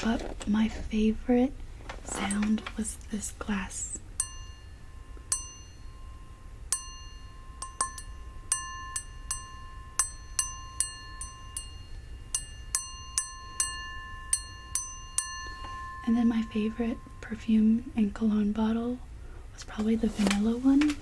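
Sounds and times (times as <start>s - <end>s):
glass tapped ringing: 4.2s - 18.1s.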